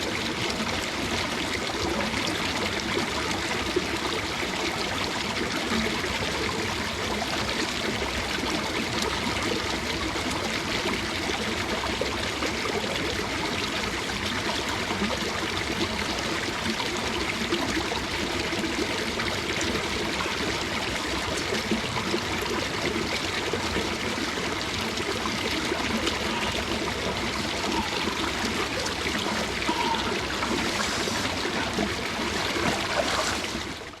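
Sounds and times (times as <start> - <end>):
running water flowing: 0.0 - 34.0.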